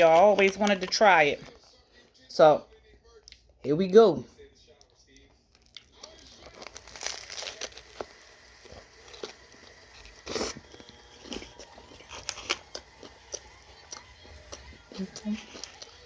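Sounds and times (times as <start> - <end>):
sandwich crust crunching: 0.0 - 2.9, 4.7 - 16.0
chewing: 2.8 - 3.5, 4.6 - 16.0.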